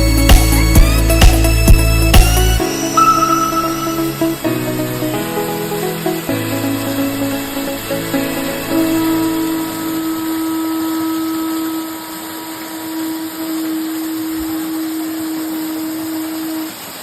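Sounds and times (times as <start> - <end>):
long held music note: 3.0 - 4.8.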